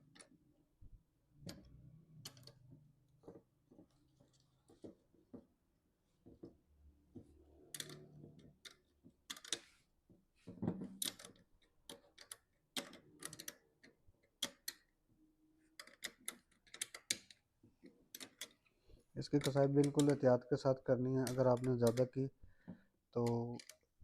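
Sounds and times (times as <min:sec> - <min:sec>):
tool clicking tightening nuts: 0:11.0 - 0:13.6, 0:19.2 - 0:20.2, 0:21.1 - 0:22.2, 0:23.2 - 0:23.9.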